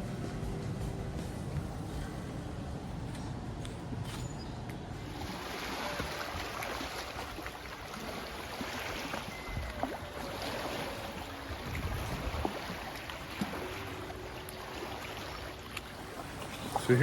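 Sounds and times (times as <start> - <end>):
small waves lapping at shore: 5.0 - 17.0.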